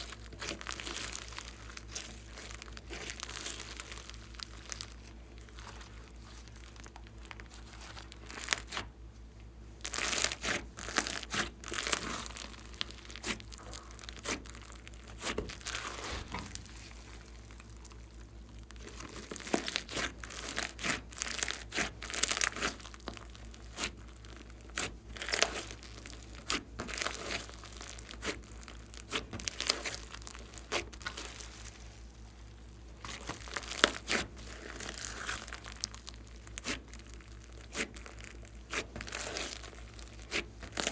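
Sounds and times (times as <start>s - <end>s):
slime sticky pops and crackles: 17.4s - 31.6s, 33.0s - 40.9s.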